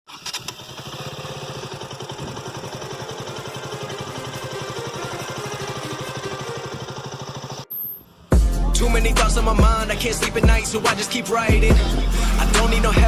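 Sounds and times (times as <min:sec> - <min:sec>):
motorcycle engine idling: 0:00.2 - 0:07.8, 0:08.4 - 0:10.9.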